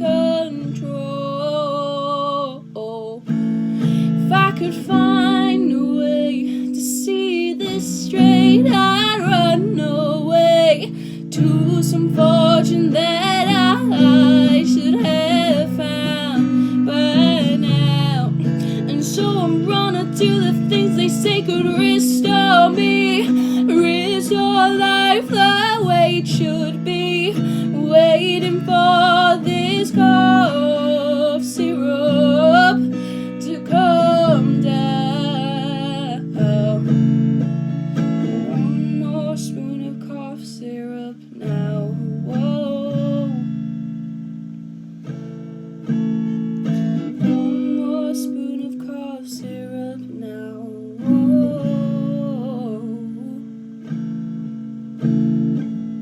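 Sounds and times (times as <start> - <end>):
acoustic guitar strumming: 0.0 - 56.0
person singing long notes: 4.3 - 36.9.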